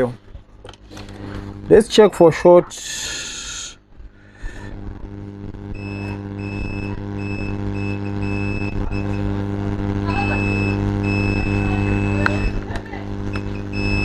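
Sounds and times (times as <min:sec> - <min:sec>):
low electrical hum: 0:00.0 - 0:14.0
multimeter buzzer beeping: 0:05.6 - 0:14.0.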